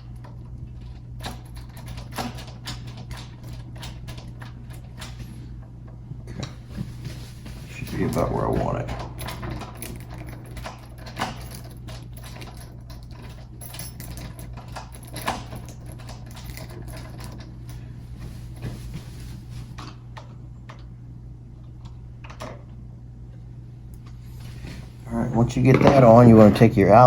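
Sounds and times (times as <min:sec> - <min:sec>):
metal lock parts clicking and rattling: 0:00.0 - 0:05.4, 0:07.7 - 0:17.8, 0:25.7 - 0:26.8
steady low hum: 0:00.0 - 0:27.0.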